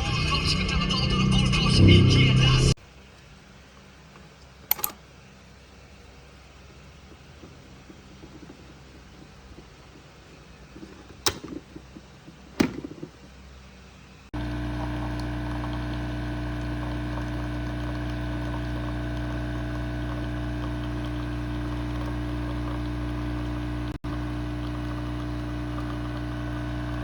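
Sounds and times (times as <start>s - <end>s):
sharp clicks: 4.4s - 5.0s.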